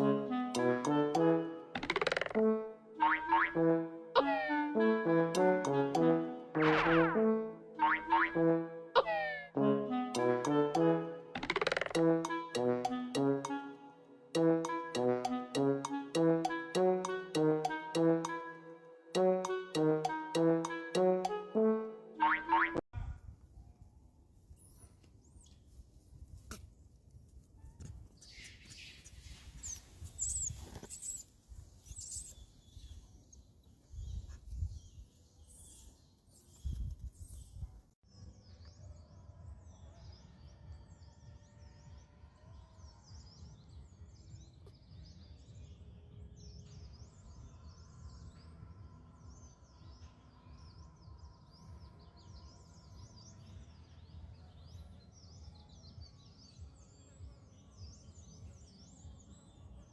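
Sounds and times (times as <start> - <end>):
small birds chirping: 28.1 - 37.7.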